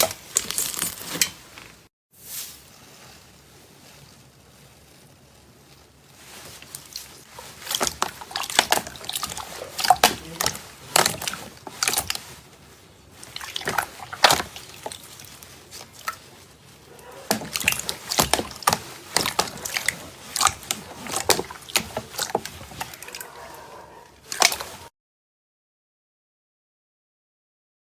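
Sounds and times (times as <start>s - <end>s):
slime squelching and popping: 0.0s - 1.3s, 5.6s - 24.9s.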